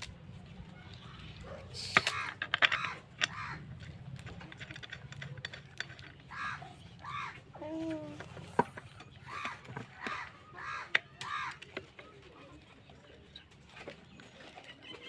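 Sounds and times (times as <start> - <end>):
sharp clicks and knocks: 1.8 - 6.7
crows cawing: 2.0 - 3.8, 6.3 - 7.5, 9.2 - 11.8.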